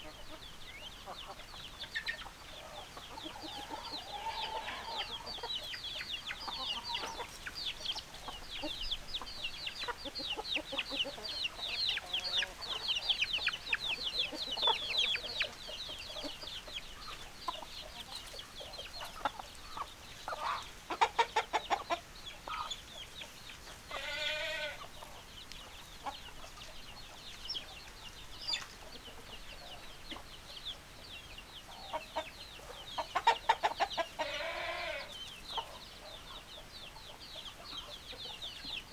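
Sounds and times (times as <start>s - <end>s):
chickens clucking and calling: 0.0s - 38.9s.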